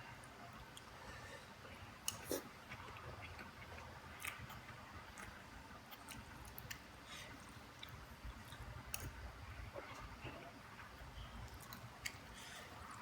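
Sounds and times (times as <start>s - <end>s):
person chewing noodles: 2.0s - 10.5s, 11.4s - 13.0s.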